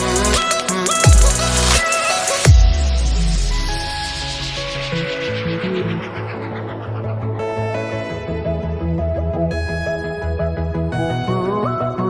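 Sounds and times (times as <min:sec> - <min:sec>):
deep bass note: 0:02.5 - 0:09.2.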